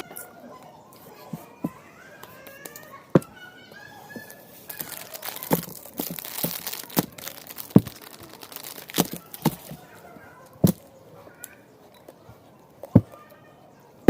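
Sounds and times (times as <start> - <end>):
crinkling noise: 4.1 - 12.1.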